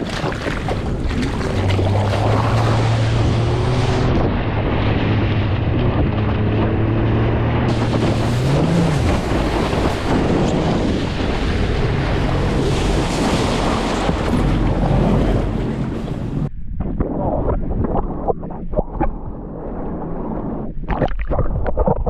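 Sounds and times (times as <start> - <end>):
rushing water: 0.0 - 16.5
heavy wind buffeting: 0.0 - 18.4
motor hum: 0.4 - 16.5.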